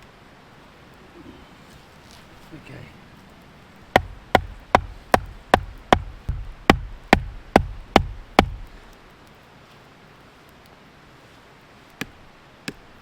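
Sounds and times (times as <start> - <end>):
sharp ringing knocks: 3.9 - 8.8.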